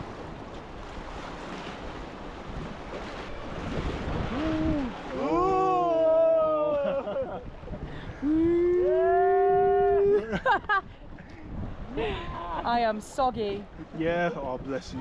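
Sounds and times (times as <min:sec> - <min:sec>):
wind on microphone: 0:00.0 - 0:15.0
person's long vocal cry: 0:08.2 - 0:10.4.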